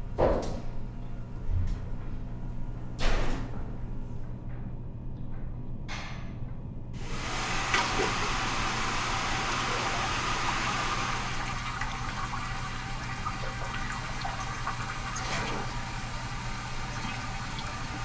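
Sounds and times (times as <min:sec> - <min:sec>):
toilet flushing: 0:07.0 - 0:18.0.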